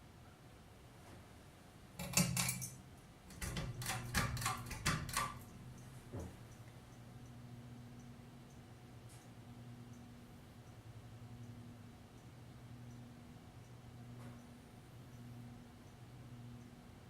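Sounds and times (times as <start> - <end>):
ceiling fan motor hum: 0.0 - 17.0
light metallic rattling: 2.0 - 6.0
sharp clicks: 3.3 - 5.6.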